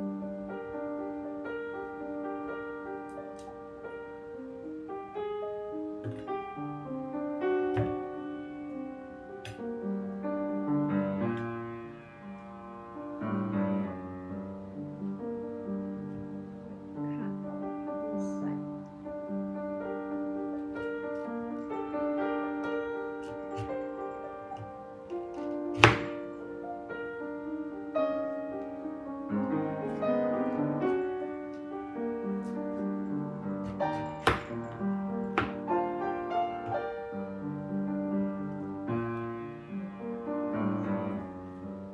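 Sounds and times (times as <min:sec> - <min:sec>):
piano music: 0:00.0 - 0:41.9
sharp knock: 0:25.8 - 0:26.2, 0:33.7 - 0:34.7, 0:35.4 - 0:35.7.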